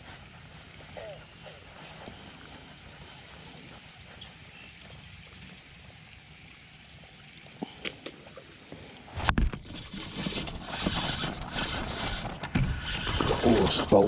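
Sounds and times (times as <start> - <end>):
fish splashing and thrashing in water: 4.8 - 14.0.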